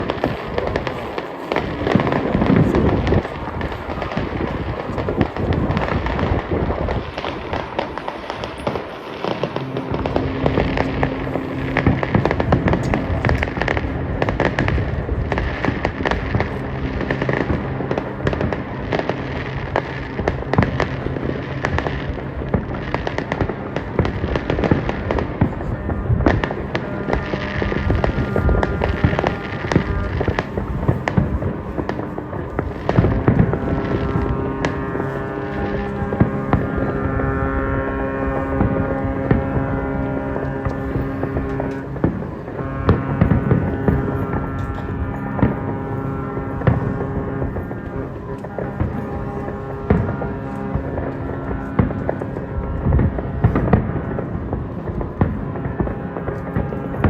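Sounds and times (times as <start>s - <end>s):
fireworks bursts and crackling: 0.0s - 57.0s
music with long held notes: 0.0s - 57.0s.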